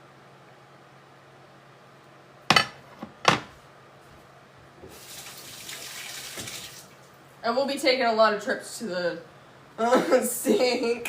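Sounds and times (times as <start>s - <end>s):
kitchen tap running: 4.8s - 7.1s.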